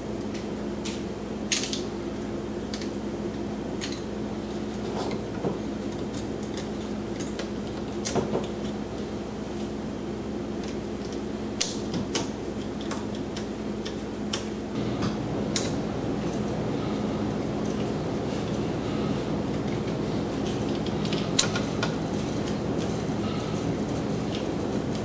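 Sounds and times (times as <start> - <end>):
low hum: 14.6 - 25.0.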